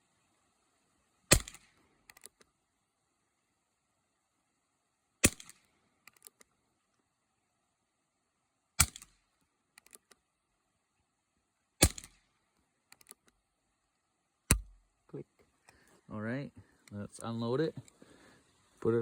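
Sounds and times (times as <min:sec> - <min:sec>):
revolver gunshots: 0:01.3 - 0:01.7, 0:11.8 - 0:12.2.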